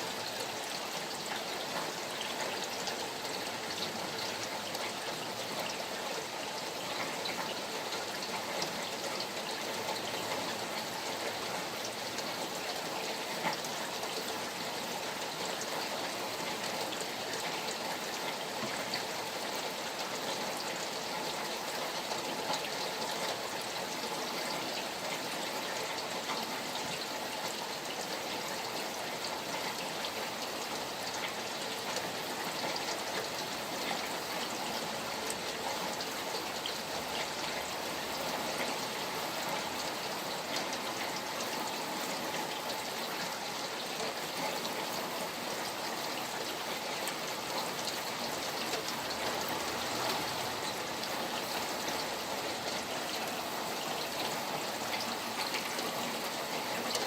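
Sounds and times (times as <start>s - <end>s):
flowing stream: 0.0s - 57.0s
rain falling: 0.0s - 57.0s.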